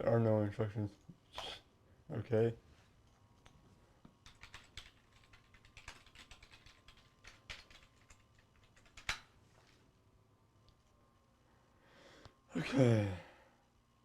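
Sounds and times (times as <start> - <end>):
faint keyboard typing: 3.4 - 9.4.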